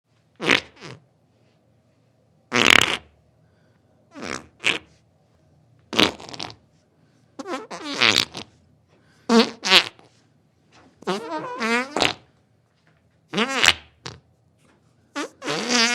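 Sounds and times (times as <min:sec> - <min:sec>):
farts with buzzing tone: 0:00.4 - 0:01.0, 0:02.5 - 0:03.1, 0:04.1 - 0:04.9, 0:05.9 - 0:06.6, 0:07.4 - 0:08.5, 0:09.3 - 0:10.1, 0:11.0 - 0:12.3, 0:13.3 - 0:14.2, 0:15.2 - 0:15.9.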